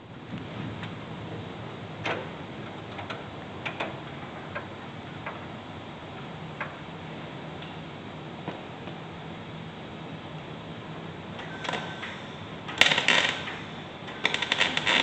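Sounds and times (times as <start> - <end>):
welding ticks and clicks: 12.7 - 15.0.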